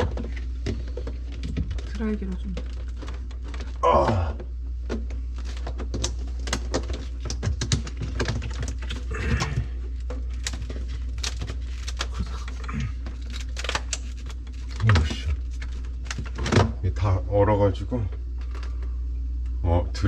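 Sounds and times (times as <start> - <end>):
plastic refrigerator parts clicking: 0.0 - 16.8
steady low hum: 0.0 - 20.0.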